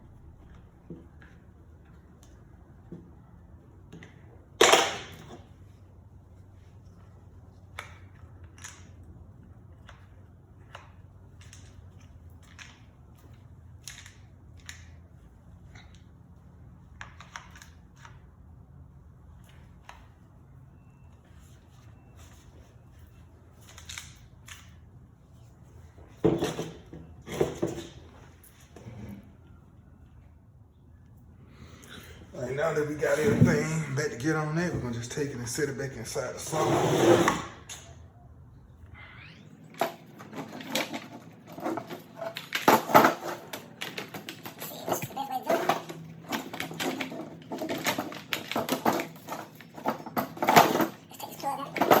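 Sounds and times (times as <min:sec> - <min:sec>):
parts knocking together: 0:39.7 - 0:51.1.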